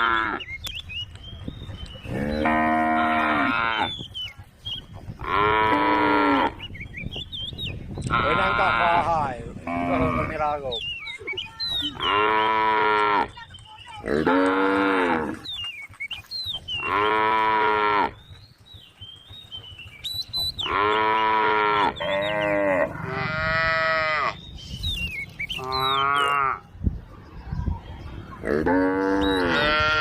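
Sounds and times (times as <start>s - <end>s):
cows mooing: 0.0s - 0.4s, 2.1s - 3.9s, 5.2s - 6.6s, 8.1s - 10.5s, 11.9s - 13.4s, 14.0s - 15.5s, 16.8s - 18.2s, 20.6s - 24.4s, 25.6s - 26.6s, 28.4s - 30.0s.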